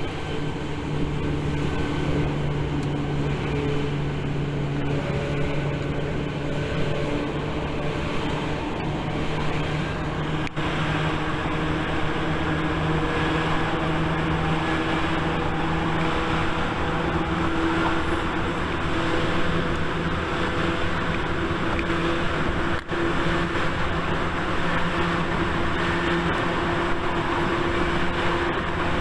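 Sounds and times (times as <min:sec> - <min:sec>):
electric train rumbling: 0:00.0 - 0:29.0.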